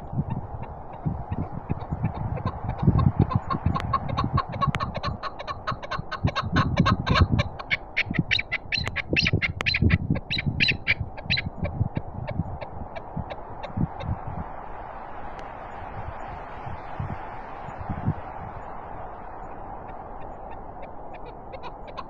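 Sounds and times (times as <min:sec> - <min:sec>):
wind buffeting microphone: 0:00.0 - 0:22.0
partridge chuck calls: 0:00.3 - 0:11.8, 0:20.2 - 0:22.0.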